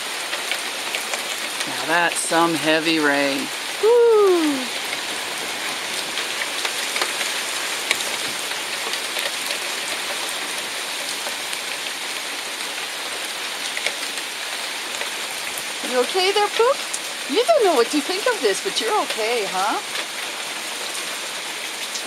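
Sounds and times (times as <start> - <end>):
heavy rain pouring: 0.0 - 22.0.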